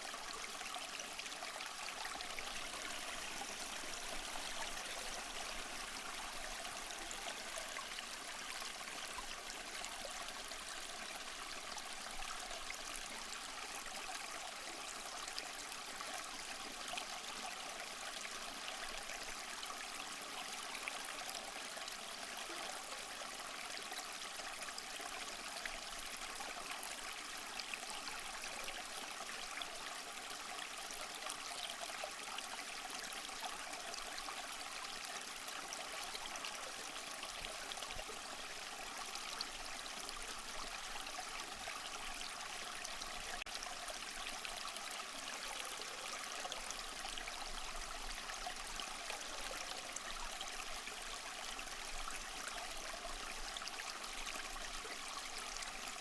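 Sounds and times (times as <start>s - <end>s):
small waterfall splashing: 0.0s - 19.3s.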